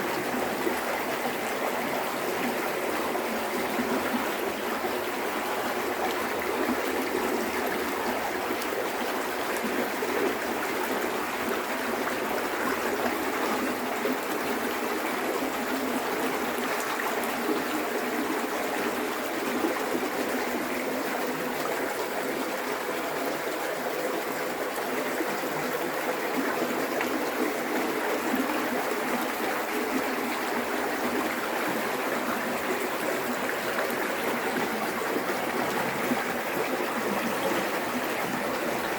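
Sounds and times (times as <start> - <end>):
river water rushing over rocks: 27.6 - 38.9.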